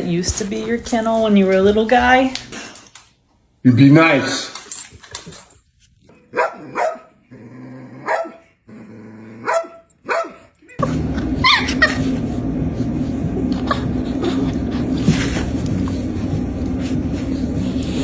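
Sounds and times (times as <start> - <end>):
dog barking: 6.2 - 7.2, 8.0 - 8.5, 9.3 - 10.6
dog growling: 6.3 - 10.4
loud steady hum: 10.8 - 18.0.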